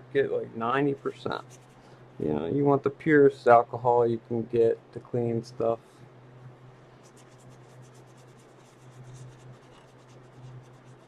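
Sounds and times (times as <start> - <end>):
fans humming: 0.0 - 11.0
rubbing strokes on processor: 1.0 - 1.9, 6.8 - 11.0.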